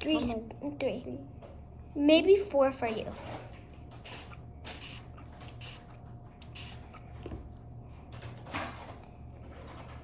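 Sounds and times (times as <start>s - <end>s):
steady low hum: 0.0s - 10.0s
spray bottle spritzing: 4.0s - 7.0s.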